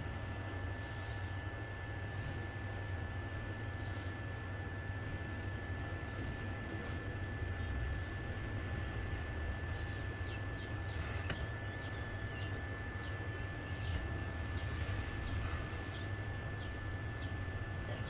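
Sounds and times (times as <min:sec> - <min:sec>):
hot air blower whining: 0:03.2 - 0:18.0
faint bird chirps: 0:10.2 - 0:17.4.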